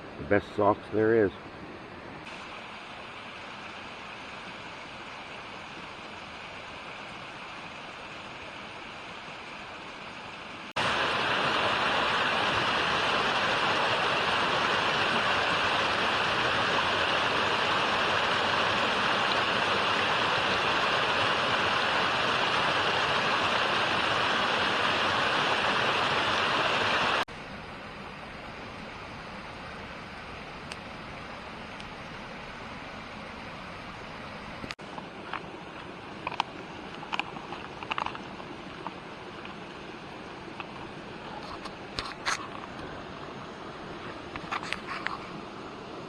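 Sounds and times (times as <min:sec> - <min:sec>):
creek and waterfall rushing: 0:00.0 - 0:27.3, 0:27.9 - 0:46.0.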